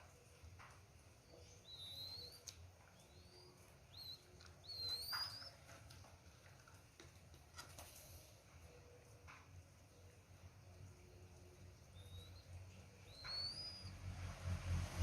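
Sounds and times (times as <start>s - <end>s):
chick squeaking: 3.2s - 5.8s.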